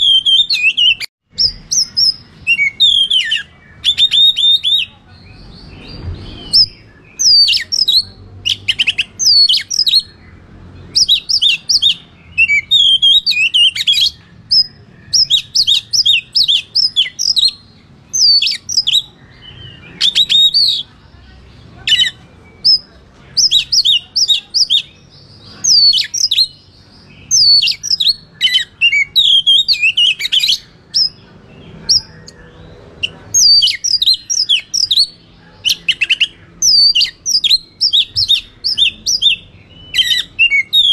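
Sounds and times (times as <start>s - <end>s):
bird singing sharp whistles: 0.0s - 4.9s.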